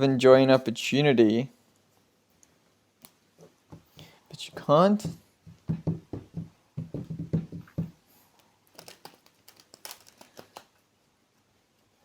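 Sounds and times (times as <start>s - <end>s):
cards tapping and flicking: 8.7s - 10.8s.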